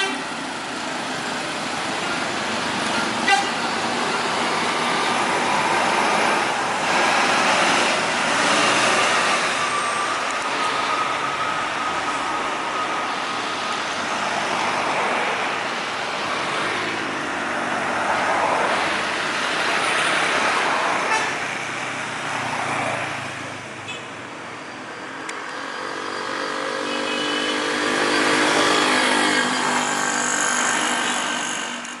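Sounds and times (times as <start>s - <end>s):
multi-tone bus horn: 0.0s - 0.4s, 2.9s - 4.4s, 21.0s - 21.4s, 26.8s - 27.8s, 28.9s - 32.0s
bus and road noise: 0.0s - 32.0s.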